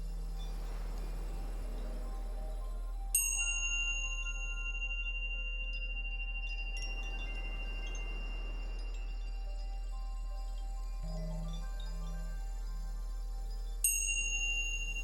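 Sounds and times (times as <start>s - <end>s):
steady deep low tone: 0.0s - 15.0s
chimes ringing: 3.1s - 15.0s.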